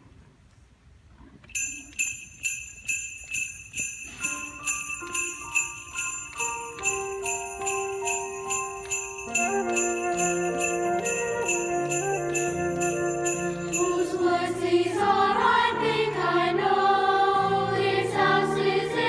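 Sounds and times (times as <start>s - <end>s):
jingle bells shaken: 1.5s - 14.8s
held notes of a tune: 1.5s - 15.8s.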